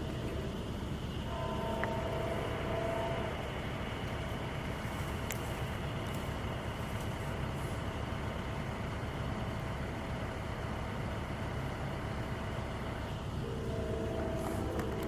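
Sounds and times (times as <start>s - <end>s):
high-pitched whine: 0.0s - 6.2s, 13.2s - 15.0s
heavy engine rumbling: 0.0s - 15.0s.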